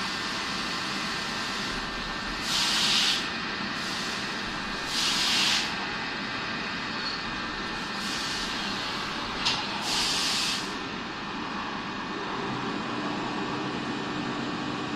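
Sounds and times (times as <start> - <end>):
short hissing bursts: 2.4 - 3.2, 4.9 - 5.7, 9.8 - 10.8.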